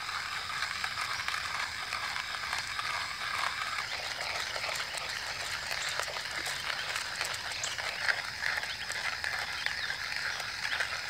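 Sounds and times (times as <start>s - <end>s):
coffee beans crunching in grinder: 0.0s - 11.0s.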